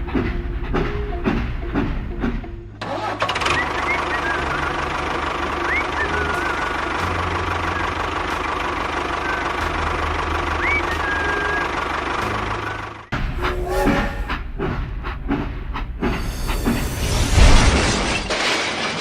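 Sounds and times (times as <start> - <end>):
engine idling: 1.7 - 13.4.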